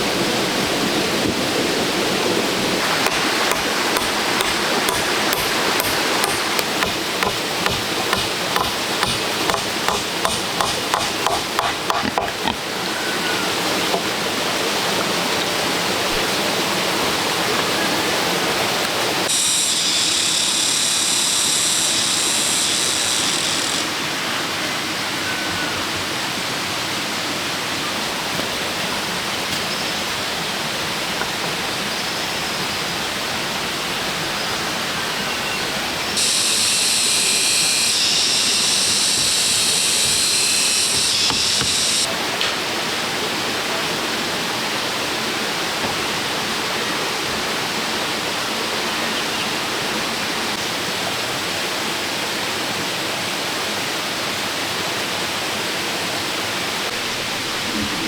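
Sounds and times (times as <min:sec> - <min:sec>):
high steady buzz: 0:02.8 - 0:12.6, 0:19.3 - 0:23.9, 0:36.2 - 0:42.1
sharp knocks: 0:02.9 - 0:12.6, 0:36.2 - 0:42.1.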